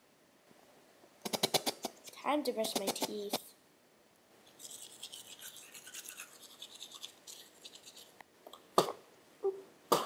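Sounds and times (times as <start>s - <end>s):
toothbrush scrubbing: 4.4s - 8.2s.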